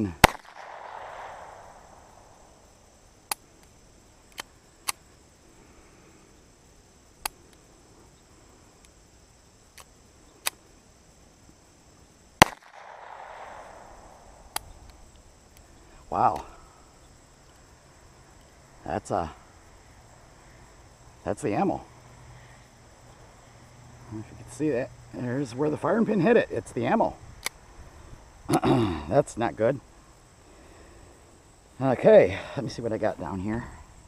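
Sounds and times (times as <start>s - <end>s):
high insect buzz: 0.0s - 34.0s
sharp cracks or clicks: 0.1s - 1.7s, 4.3s - 5.0s, 12.4s - 15.7s
pistol shots with echo: 0.2s - 2.3s, 12.4s - 14.6s.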